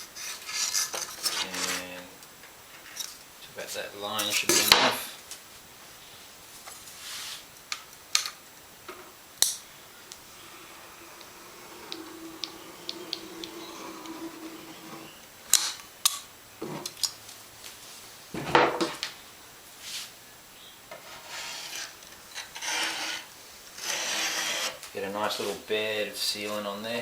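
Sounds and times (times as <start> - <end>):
rubbing and scraping: 10.4 - 15.2, 20.9 - 25.6.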